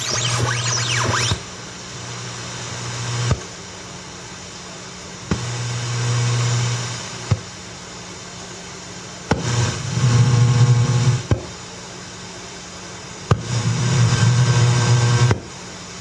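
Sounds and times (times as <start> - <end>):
pulsed low buzzing radio tone: 0.0 - 1.5, 9.4 - 11.3, 13.4 - 15.4
radio static hiss: 0.0 - 1.5.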